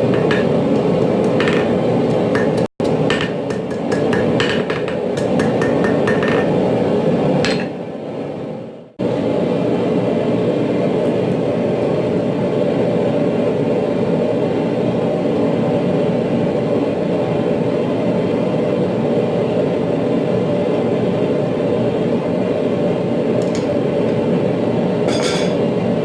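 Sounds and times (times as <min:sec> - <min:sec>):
workshop machinery rumbling: 0:00.0 - 0:08.4, 0:23.4 - 0:25.8.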